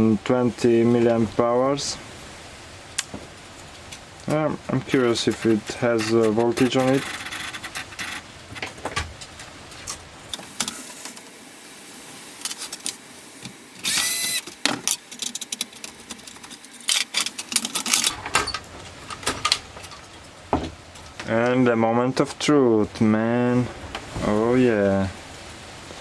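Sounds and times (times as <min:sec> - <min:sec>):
laptop parts and tools clicking: 0:12.4 - 0:20.1.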